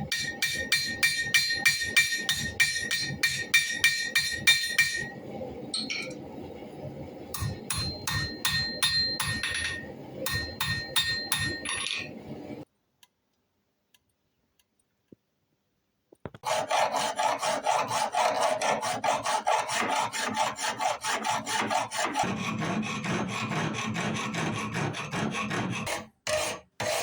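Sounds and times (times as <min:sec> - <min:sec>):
file rasping on steel: 0:00.0 - 0:05.2, 0:16.4 - 0:27.0
hammer striking steel on anvil: 0:00.0 - 0:05.2, 0:05.8 - 0:06.2, 0:07.3 - 0:12.2.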